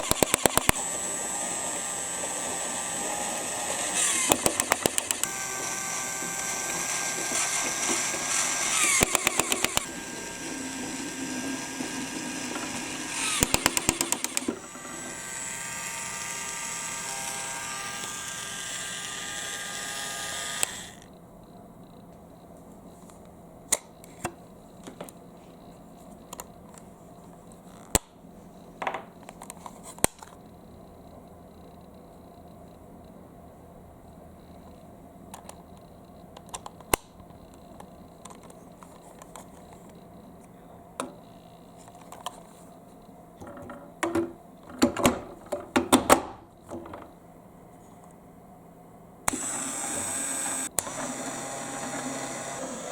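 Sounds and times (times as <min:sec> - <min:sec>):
electric drill motor whirring: 0:00.0 - 0:21.1, 0:49.3 - 0:52.9.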